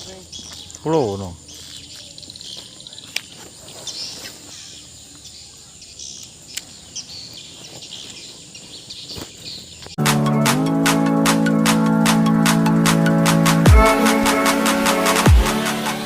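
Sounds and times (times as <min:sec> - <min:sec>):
faint bird chirps: 0:00.0 - 0:10.0.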